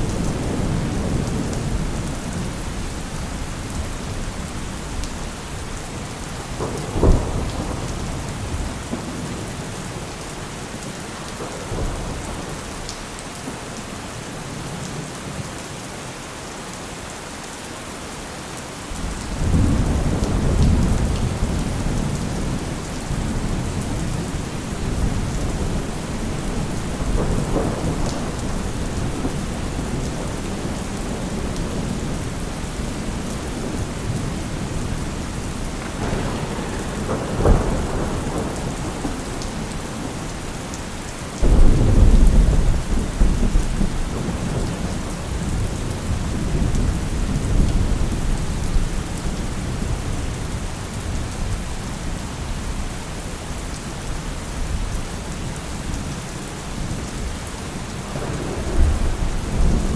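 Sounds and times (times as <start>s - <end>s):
thunder clap and rumble: 0.0s - 10.0s, 19.0s - 51.8s, 57.9s - 59.9s
heavy rain: 0.0s - 59.9s.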